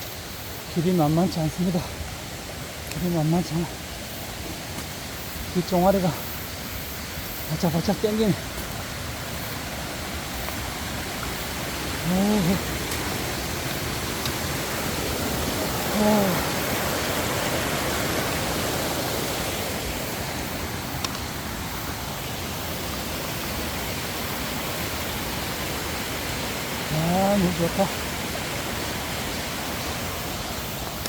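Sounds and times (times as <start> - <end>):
mountain stream rushing: 0.0 - 31.0
person's short vocal sound: 15.8 - 16.6.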